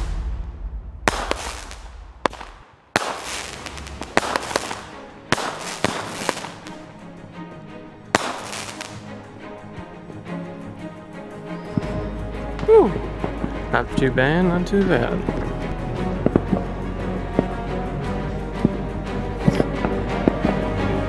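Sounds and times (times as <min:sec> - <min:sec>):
music: 0:00.0 - 0:02.4, 0:03.0 - 0:21.0
fireworks banging: 0:00.0 - 0:07.0, 0:08.1 - 0:09.1, 0:11.7 - 0:17.7
fireworks hissing: 0:01.1 - 0:06.8, 0:08.1 - 0:09.2.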